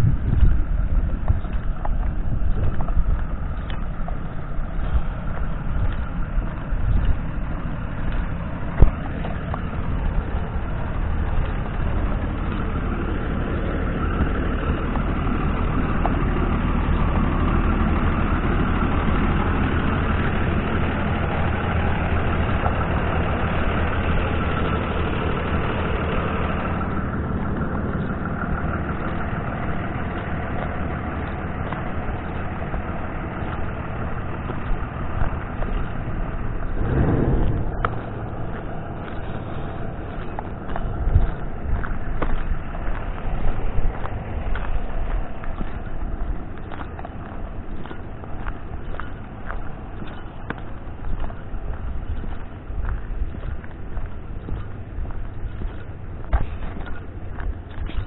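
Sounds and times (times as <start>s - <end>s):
road rumble: 0.0s - 58.0s
vehicle engine: 0.0s - 58.0s.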